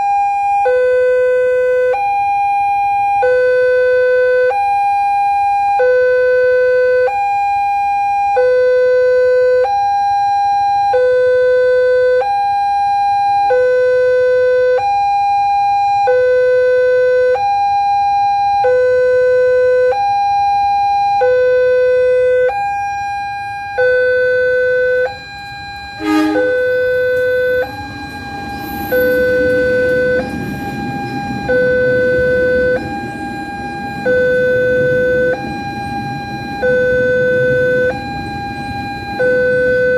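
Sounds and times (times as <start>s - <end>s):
level crossing two-tone siren: 0.0s - 39.9s
low rumbling noise: 23.6s - 39.9s.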